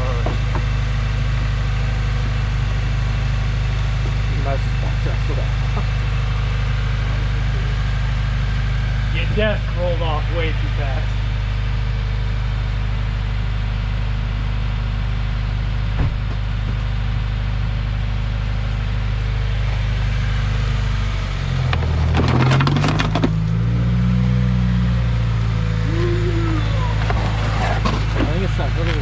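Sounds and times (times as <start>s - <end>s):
car engine idling: 0.0s - 29.0s
crackling scraping noise: 26.8s - 29.0s.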